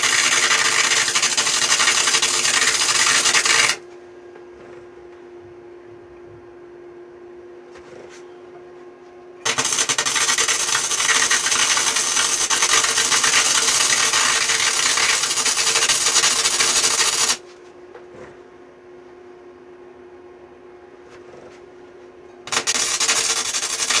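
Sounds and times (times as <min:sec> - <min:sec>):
welder steady hum: 0:00.0 - 0:03.8, 0:09.5 - 0:17.4, 0:22.5 - 0:24.0
welding arc crackling: 0:00.0 - 0:03.8, 0:09.5 - 0:17.4, 0:22.5 - 0:24.0.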